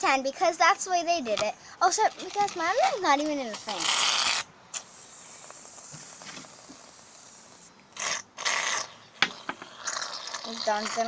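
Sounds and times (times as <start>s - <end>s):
aerosol can hissing spurts: 2.2s - 11.0s.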